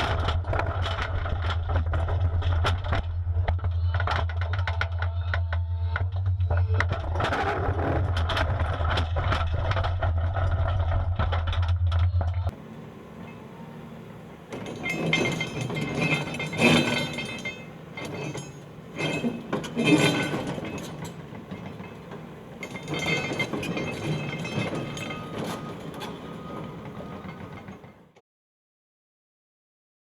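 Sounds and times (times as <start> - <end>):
excavator ripper grinding rock: 0.0 - 5.1, 6.8 - 28.1
diesel engine hum: 0.0 - 28.2
clinking of rock and steel: 12.5 - 28.0.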